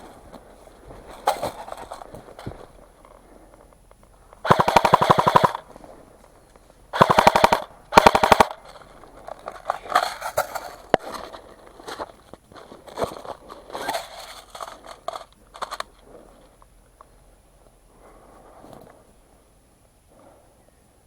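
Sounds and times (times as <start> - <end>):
rustling and knocks: 0.0 - 4.1
airsoft gun firing full auto: 4.4 - 5.7, 6.9 - 8.8.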